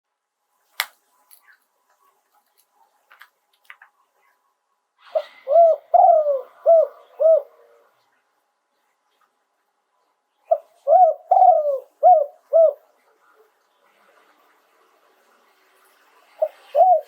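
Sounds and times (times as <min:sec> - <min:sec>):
dove cooing: 0:05.1 - 0:07.9, 0:10.5 - 0:12.9, 0:16.4 - 0:17.0.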